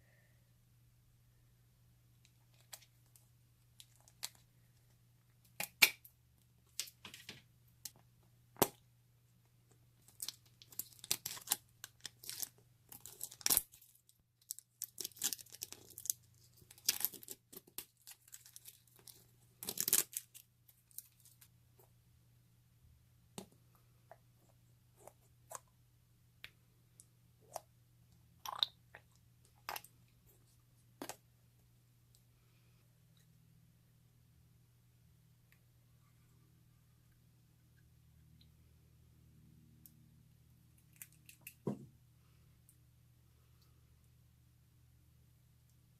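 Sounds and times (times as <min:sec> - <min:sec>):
slime popping and crackling: 0:10.0 - 0:18.9.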